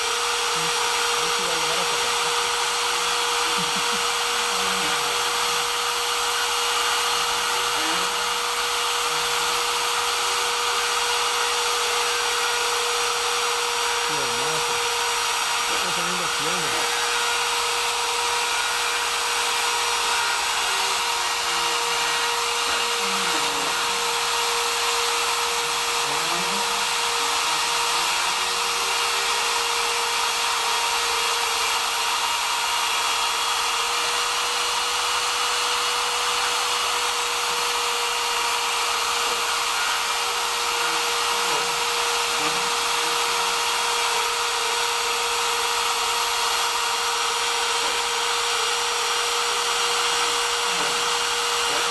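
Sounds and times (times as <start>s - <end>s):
router spindle high whine: 0.0s - 51.9s.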